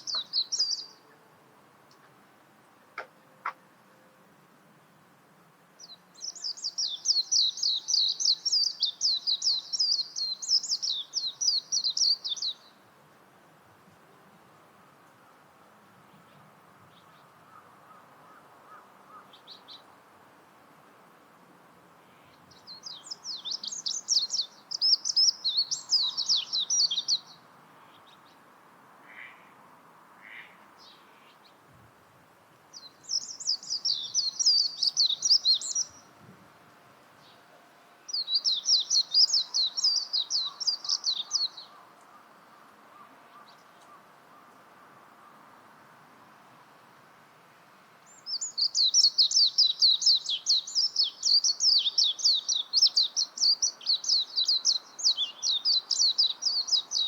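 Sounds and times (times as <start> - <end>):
bird twittering song: 0.0 - 1.1, 5.8 - 12.8, 22.2 - 28.4, 32.7 - 36.1, 38.1 - 42.3, 48.1 - 57.0.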